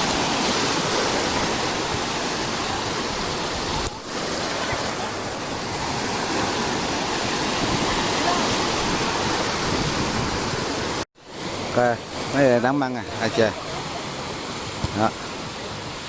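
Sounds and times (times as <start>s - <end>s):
waves breaking on beach: 0.0s - 16.0s.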